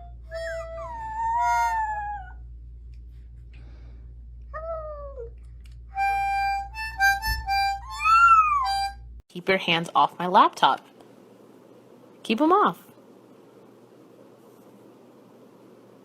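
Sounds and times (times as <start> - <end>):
harmonica-like held notes: 0.0 - 2.2, 5.9 - 9.1
cat meowing: 8.0 - 8.8.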